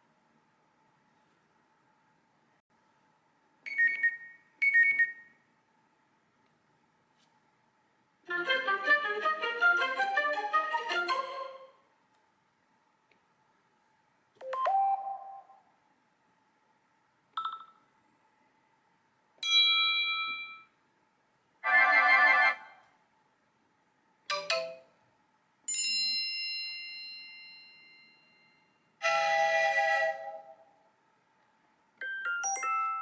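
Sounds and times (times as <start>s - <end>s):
phone text tone chimes: 3.7s - 5.3s.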